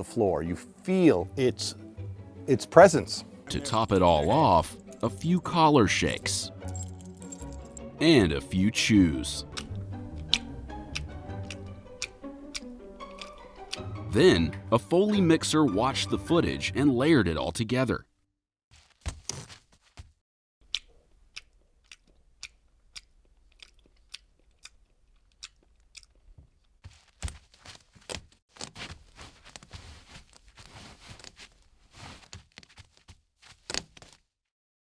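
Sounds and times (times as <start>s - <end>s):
crunching and chewing: 9.6s - 13.9s, 20.6s - 28.8s.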